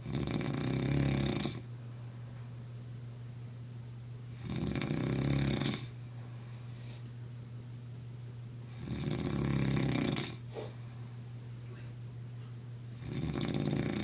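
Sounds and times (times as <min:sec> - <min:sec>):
man snoring: 0:00.0 - 0:01.7, 0:04.3 - 0:06.0, 0:08.7 - 0:10.4, 0:13.0 - 0:14.0
steady low hum: 0:00.0 - 0:14.0.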